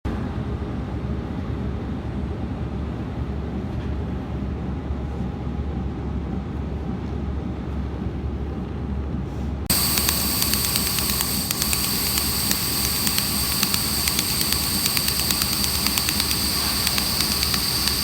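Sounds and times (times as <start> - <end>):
machinery humming and rumbling: 9.7 - 18.0.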